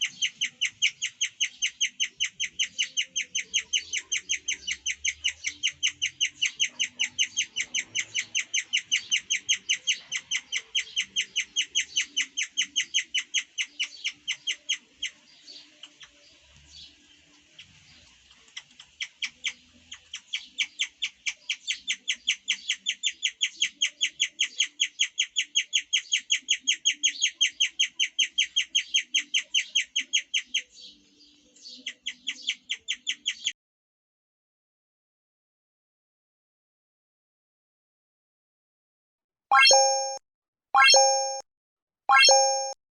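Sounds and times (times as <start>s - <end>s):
guinea pig chirping: 0.0s - 16.3s, 18.5s - 31.0s, 31.6s - 33.5s, 39.5s - 40.2s, 40.8s - 41.4s, 42.1s - 42.8s.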